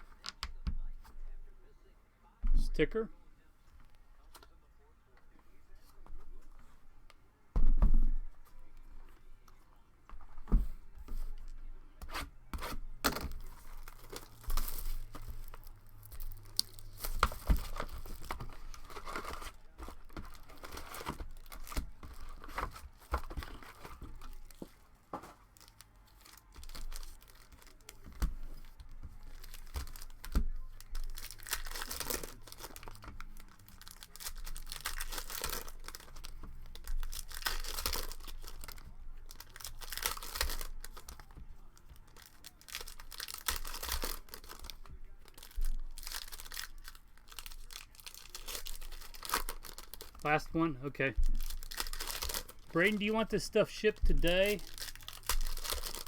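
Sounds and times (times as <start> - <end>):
wrappers tearing and crinkling: 12.1 - 56.0.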